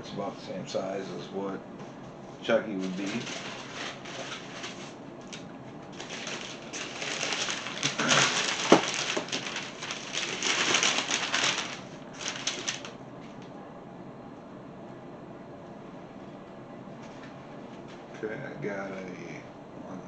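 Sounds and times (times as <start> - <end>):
packaging rustling and crinkling: 2.7 - 13.0.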